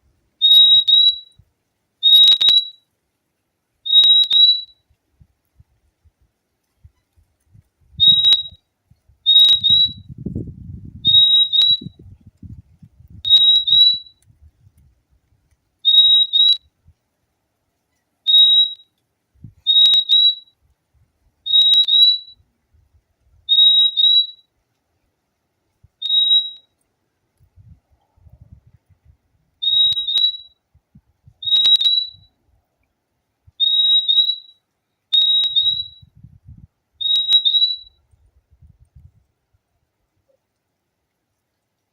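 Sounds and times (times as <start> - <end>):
bird whistled calls: 0.4 - 1.4, 2.0 - 2.8, 3.8 - 4.8, 8.0 - 8.6, 9.2 - 10.1, 11.0 - 12.0, 13.2 - 14.2, 15.8 - 16.6, 18.3 - 18.9, 19.6 - 20.5, 21.5 - 22.4, 23.5 - 24.5, 26.0 - 26.7, 29.6 - 30.6, 31.4 - 32.3, 33.6 - 36.1, 37.0 - 38.0.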